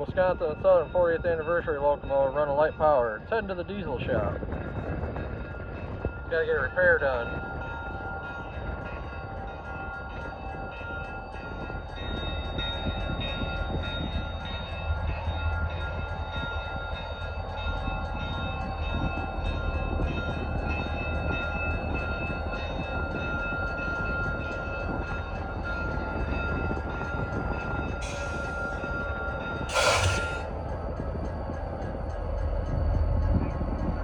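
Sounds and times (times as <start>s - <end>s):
diesel locomotive engine rumbling: 11.4s - 34.0s
high-pitched whines: 28.0s - 28.8s, 29.7s - 30.5s.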